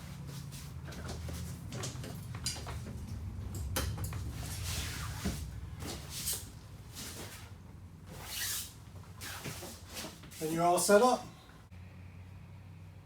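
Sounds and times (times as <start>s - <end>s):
upholstery rustling: 4.2s - 11.0s.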